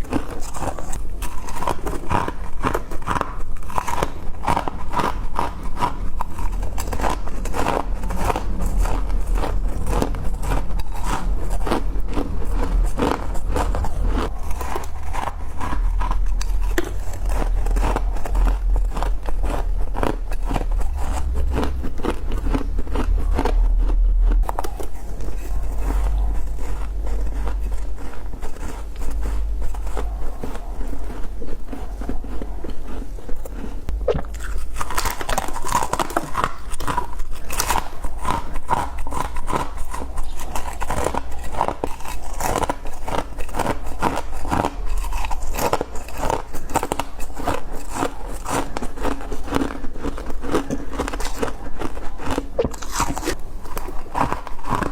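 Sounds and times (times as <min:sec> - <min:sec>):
crunching and chewing frost: 0:00.0 - 0:54.9.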